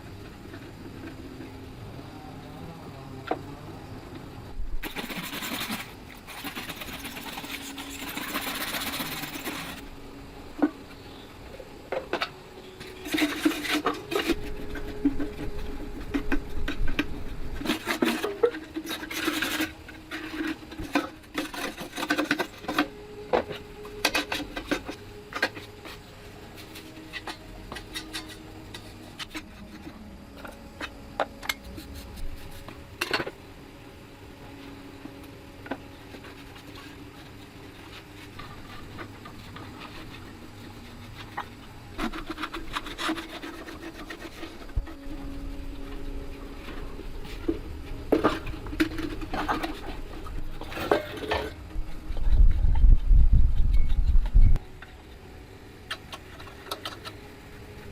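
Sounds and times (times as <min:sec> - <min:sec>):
faint hum: 0:00.0 - 0:57.9
scraping and rubbing: 0:04.8 - 0:10.0, 0:11.8 - 0:33.4, 0:35.8 - 0:54.4.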